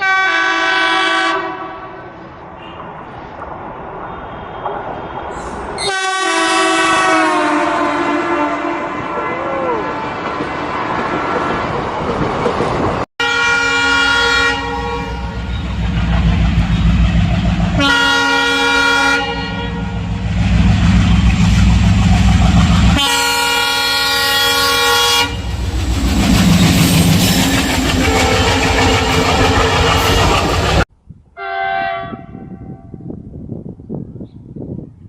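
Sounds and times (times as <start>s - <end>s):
locomotive air horn blasts: 0.0s - 2.8s, 5.4s - 10.2s, 13.2s - 15.5s, 17.8s - 20.0s, 23.0s - 25.6s, 31.4s - 32.9s
train rumble and wheel clatter: 0.0s - 31.0s.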